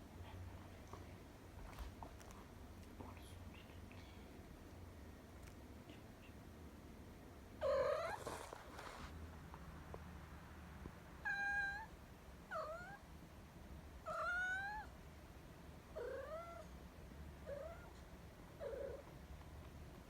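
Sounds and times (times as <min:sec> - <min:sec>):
cat meowing: 0:11.2 - 0:11.9, 0:12.5 - 0:13.0, 0:14.1 - 0:14.9, 0:16.0 - 0:16.7.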